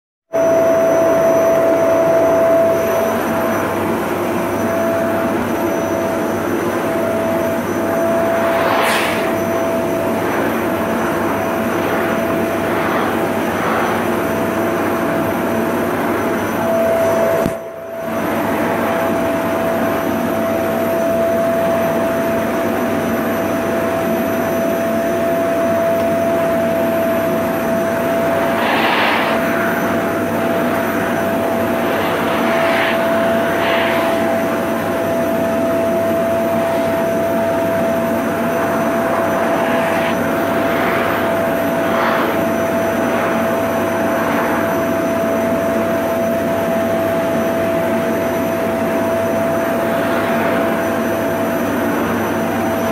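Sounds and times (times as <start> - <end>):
vacuum cleaner running: 0.4 - 52.9.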